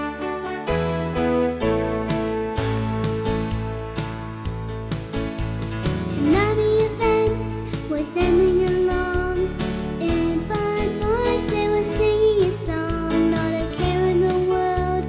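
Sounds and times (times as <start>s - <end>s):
children's song music: 0.0s - 15.0s.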